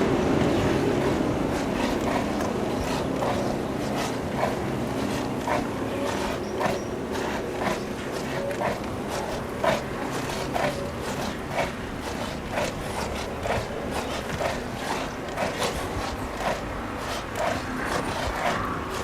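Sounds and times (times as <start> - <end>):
low traffic noise: 0.0 - 19.0.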